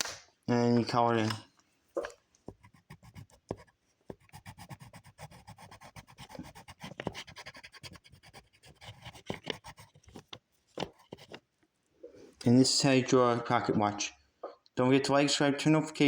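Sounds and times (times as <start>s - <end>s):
drawing tool scratching paper: 2.5s - 11.5s.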